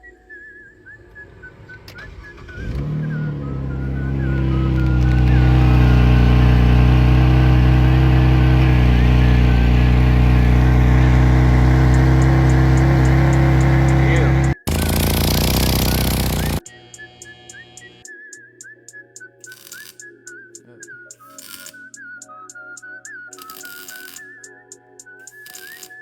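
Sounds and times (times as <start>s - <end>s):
person whistling a tune: 0.0s - 9.9s, 15.9s - 26.0s
car engine starting and idling: 1.3s - 16.6s.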